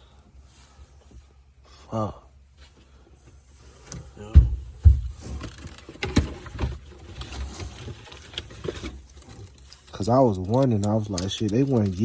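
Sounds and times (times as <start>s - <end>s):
hands handling wiring and parts: 2.5s - 12.0s.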